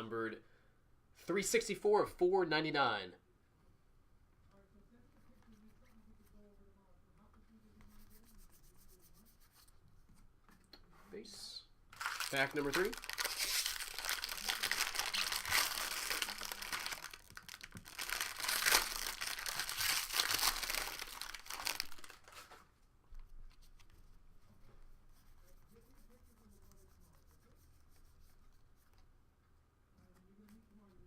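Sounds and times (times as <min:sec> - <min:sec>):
faint handling sounds: 0:03.5 - 0:25.9
wrapper tearing and crinkling: 0:12.0 - 0:22.5.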